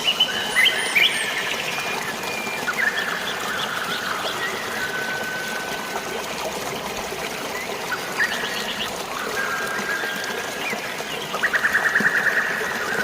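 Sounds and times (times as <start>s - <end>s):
birds whistling and chirping: 0.0s - 6.3s
flowing water rushing: 0.0s - 13.0s.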